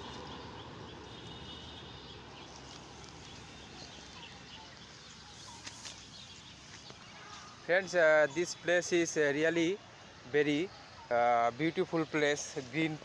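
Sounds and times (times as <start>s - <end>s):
small bird chirps: 2.4s - 7.6s.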